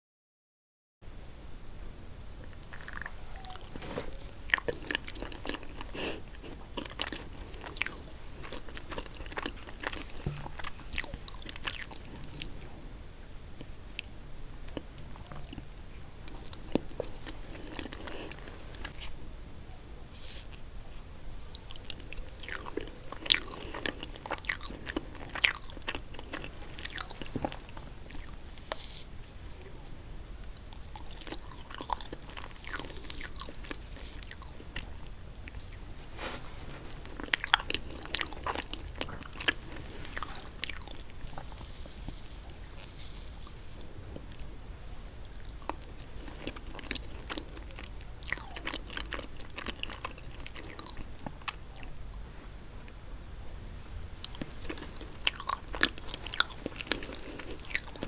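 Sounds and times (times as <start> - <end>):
chewing with mouth clicks: 2.7 - 3.7, 4.5 - 19.1, 21.5 - 28.8, 29.6 - 44.5, 45.2 - 52.2, 53.8 - 58.0
crisp crunches: 21.6 - 44.5, 53.8 - 58.0.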